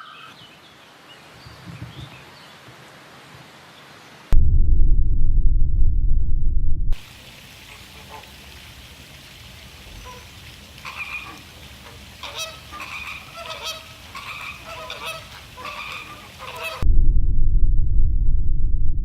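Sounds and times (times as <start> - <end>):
steady hiss: 7.0 - 16.8.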